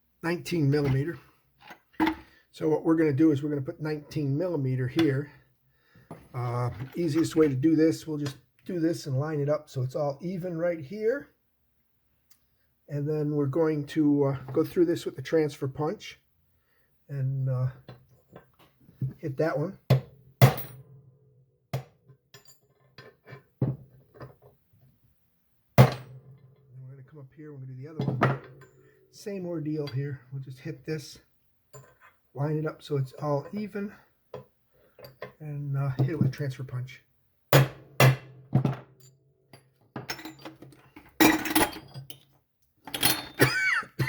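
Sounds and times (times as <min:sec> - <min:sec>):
hammer striking metal punch: 0:25.8 - 0:26.2, 0:37.5 - 0:38.8
metal tools clinking and clanking: 0:39.0 - 0:43.7
steel tools clinking: 0:42.9 - 0:43.6.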